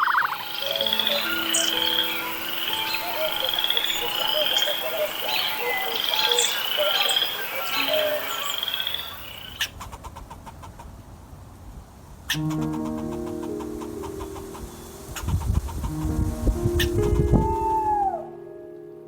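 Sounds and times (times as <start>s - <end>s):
scattered chirps: 0.0s - 9.7s
animals calling with rising trills: 0.0s - 9.8s, 16.8s - 18.4s.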